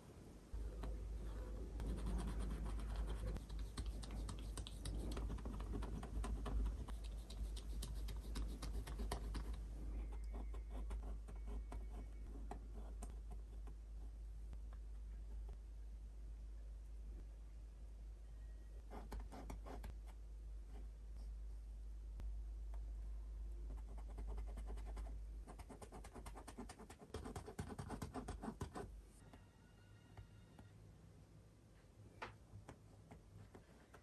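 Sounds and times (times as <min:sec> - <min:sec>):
paintbrush scratchy strokes: 0:00.9 - 0:13.0.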